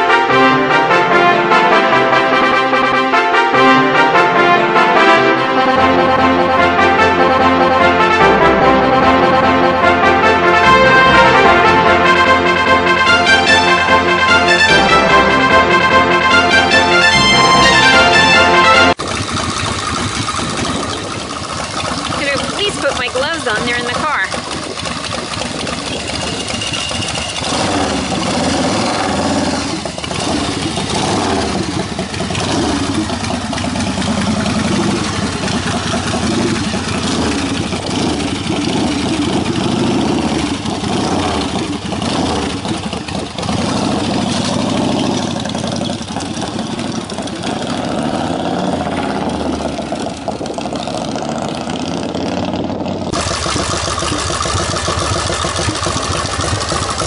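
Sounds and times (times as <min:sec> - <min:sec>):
motorcycle engine revving: 0:01.9 - 0:57.0.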